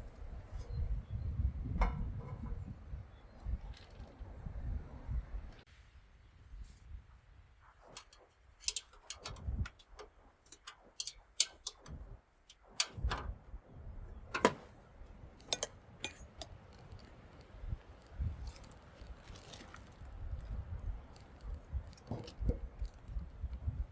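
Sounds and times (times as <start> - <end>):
sharp clicks: 7.8 - 13.3.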